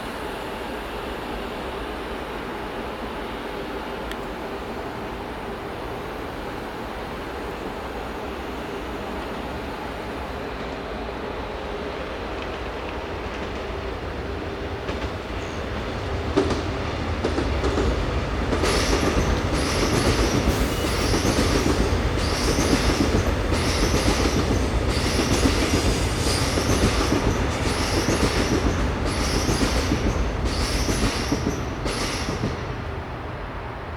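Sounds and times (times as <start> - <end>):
subway train rumbling on track: 0.0 - 33.9.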